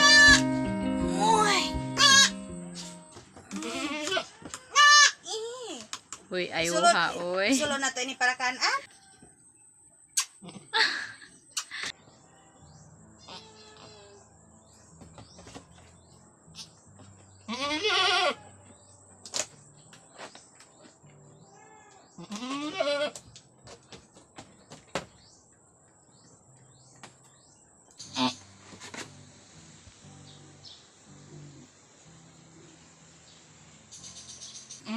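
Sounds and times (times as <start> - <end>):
goat bleating: 0.0 - 2.9, 3.5 - 5.2, 13.2 - 14.2, 17.5 - 18.6, 21.5 - 23.2, 28.1 - 28.5.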